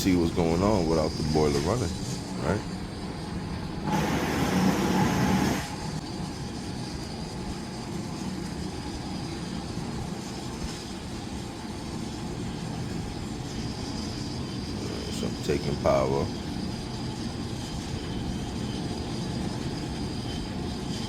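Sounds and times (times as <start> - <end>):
machinery hum: 0.0 - 21.0
rushing noise: 0.1 - 6.3.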